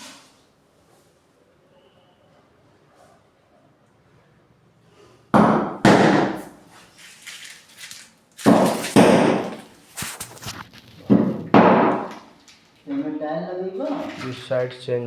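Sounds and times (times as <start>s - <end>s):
heavy knocks on hard surface: 5.3s - 6.5s, 8.5s - 9.7s, 11.1s - 12.2s.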